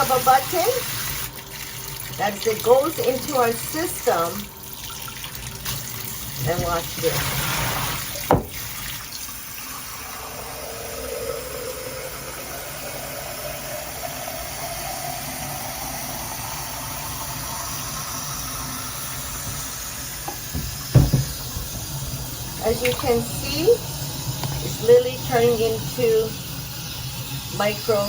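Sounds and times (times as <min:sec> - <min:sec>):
shower head spraying water: 0:06.4 - 0:08.8, 0:10.9 - 0:28.0
knocks: 0:08.3 - 0:08.6, 0:20.3 - 0:21.7
faint hum: 0:09.5 - 0:28.0.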